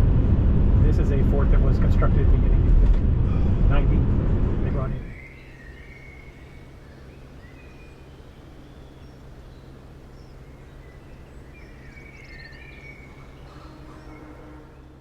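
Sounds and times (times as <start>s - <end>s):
steady low hum: 0.0s - 15.0s
bird chirps: 5.0s - 15.0s.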